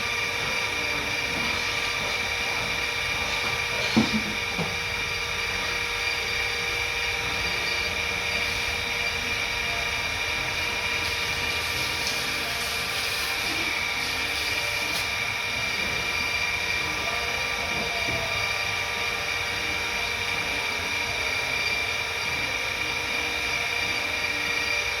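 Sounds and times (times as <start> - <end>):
machine high-pitched whine: 0.0 - 25.0.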